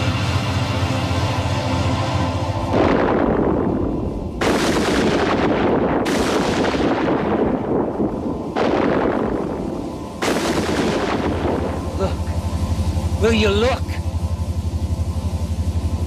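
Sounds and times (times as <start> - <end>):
mechanical hum: 0.0 - 16.0
heavy booms: 2.7 - 12.4.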